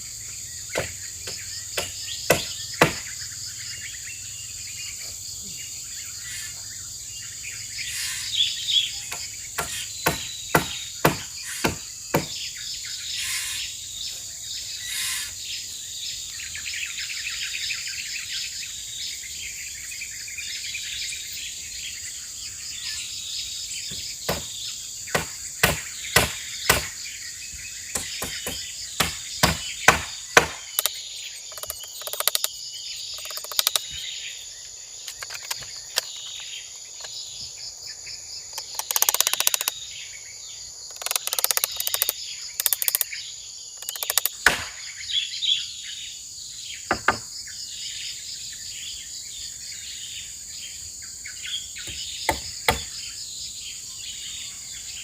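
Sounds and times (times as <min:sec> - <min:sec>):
forest insects buzzing: 0:00.0 - 0:55.0
sharp knocks: 0:00.7 - 0:03.1, 0:09.1 - 0:12.4, 0:23.9 - 0:24.5, 0:25.1 - 0:26.9, 0:27.9 - 0:30.9, 0:31.5 - 0:32.5, 0:33.2 - 0:33.9, 0:38.6 - 0:39.7, 0:43.8 - 0:44.8.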